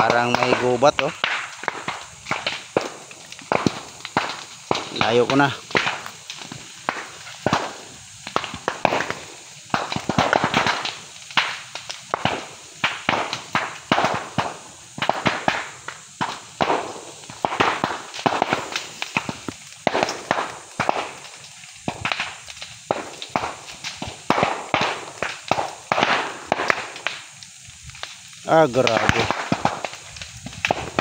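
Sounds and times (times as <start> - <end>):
bamboo popping and cracking: 0.0 - 14.5
fire crackling: 0.0 - 31.0.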